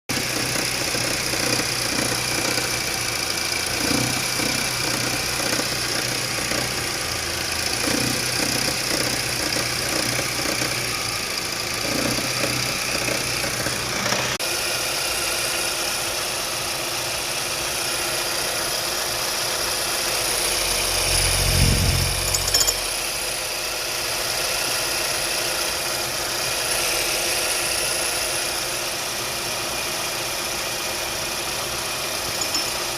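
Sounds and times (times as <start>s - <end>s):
belt drive knocking: 0.1s - 3.0s, 3.7s - 11.1s, 11.8s - 14.4s
car engine running: 0.1s - 32.9s
low rumble: 21.1s - 22.5s.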